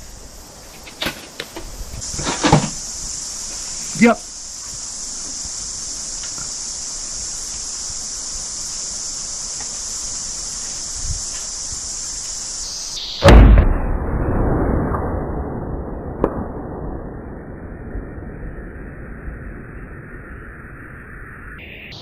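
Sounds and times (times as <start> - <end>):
steady high hiss: 0.0 - 13.5, 19.9 - 22.0.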